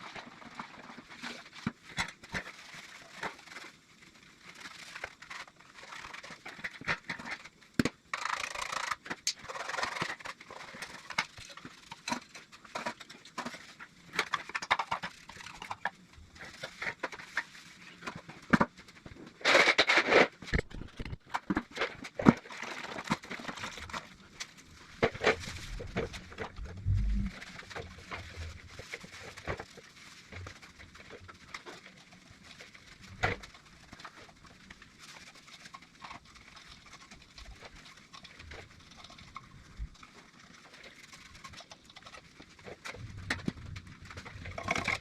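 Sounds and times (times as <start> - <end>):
scrubbing and scraping: 19.4 - 45.0.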